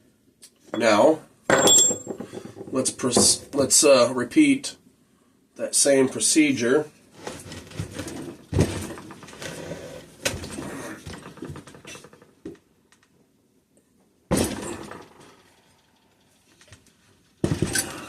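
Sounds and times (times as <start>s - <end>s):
sharp metal knocks: 1.5s - 3.4s
metal parts rattling: 14.3s - 16.6s, 17.4s - 18.0s.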